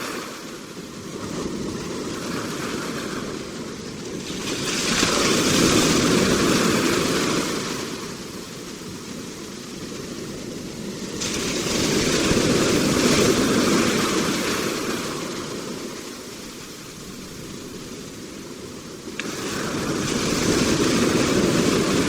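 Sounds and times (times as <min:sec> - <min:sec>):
ocean waves crashing on shore: 0:00.0 - 0:22.0.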